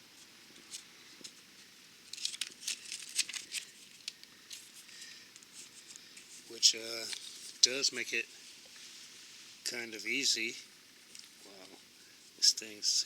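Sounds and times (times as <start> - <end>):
packaging crinkling: 2.0 - 5.5.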